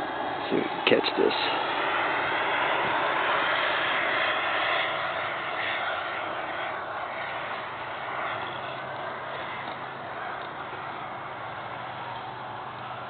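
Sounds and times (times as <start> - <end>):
jet turbine hiss: 0.0 - 13.0.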